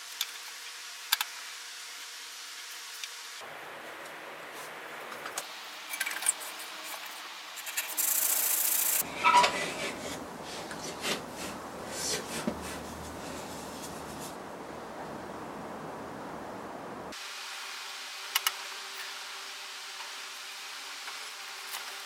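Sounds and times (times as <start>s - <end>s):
steady hiss: 0.0s - 22.0s
scraping on wood: 9.0s - 14.4s.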